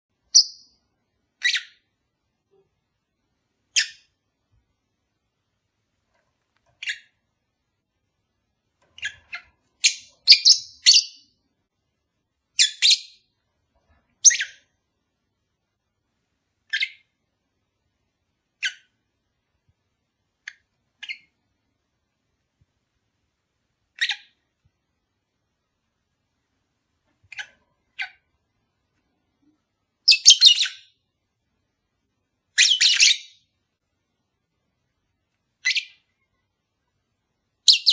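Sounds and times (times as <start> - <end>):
lovebird chirping: 0.2 - 0.8, 1.4 - 2.6, 3.7 - 4.2, 6.7 - 7.3, 9.0 - 11.4, 12.5 - 13.4, 14.2 - 14.8, 16.6 - 17.2, 18.6 - 19.0, 20.4 - 21.4, 23.9 - 24.4, 27.2 - 28.3, 30.0 - 31.0, 32.5 - 33.6, 35.6 - 36.4, 37.6 - 37.9.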